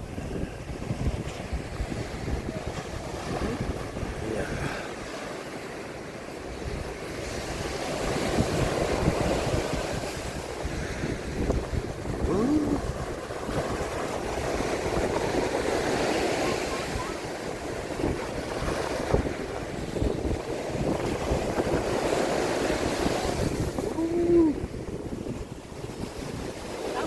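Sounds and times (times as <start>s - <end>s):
wind buffeting microphone: 0.0s - 5.1s, 6.0s - 27.0s
sea surf washing on beach: 0.0s - 27.0s
short cry: 12.2s - 12.9s, 23.8s - 24.6s.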